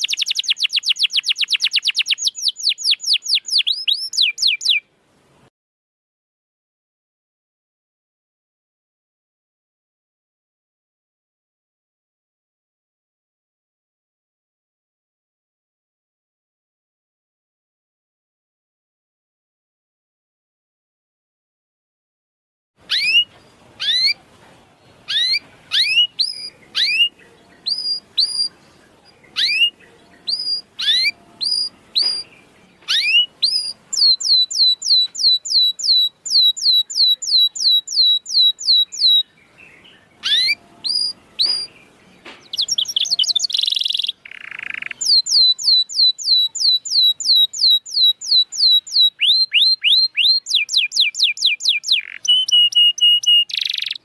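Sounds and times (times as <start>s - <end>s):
canary chirping and trilling: 0.0s - 4.8s, 22.8s - 54.0s.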